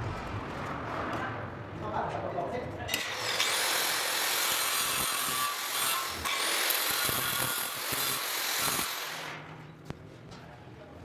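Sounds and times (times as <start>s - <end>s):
power tool spinning up: 3.0s - 9.4s
harsh hiss of grinding: 3.1s - 9.4s.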